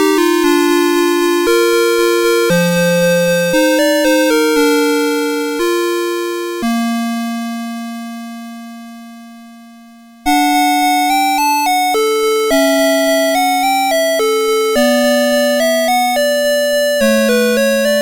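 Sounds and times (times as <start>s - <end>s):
alarm clock beeping melody: 10.3s - 18.0s.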